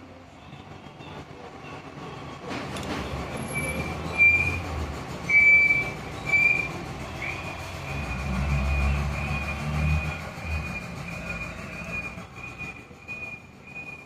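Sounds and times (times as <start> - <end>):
metal squealing on metal: 3.4 - 14.0.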